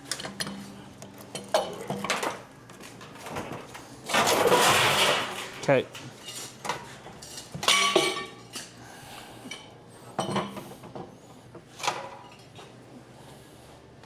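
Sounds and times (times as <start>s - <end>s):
metal clanking and rattling: 3.0s - 8.3s.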